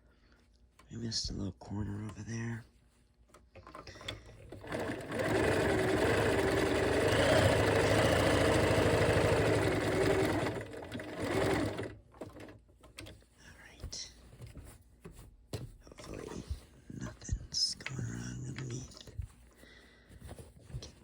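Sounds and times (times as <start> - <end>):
sewing machine stitching: 3.9 - 13.1.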